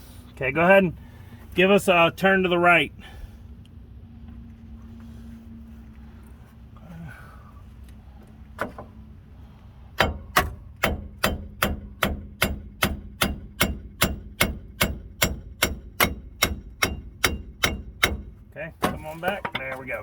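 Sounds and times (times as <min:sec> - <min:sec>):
hammer striking metal: 0:10.0 - 0:19.0.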